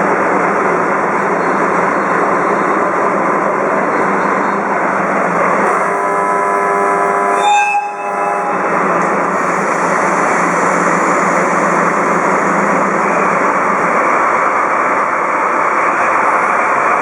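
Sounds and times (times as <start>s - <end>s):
train running: 0.0s - 17.0s
train horn chord: 5.6s - 8.9s.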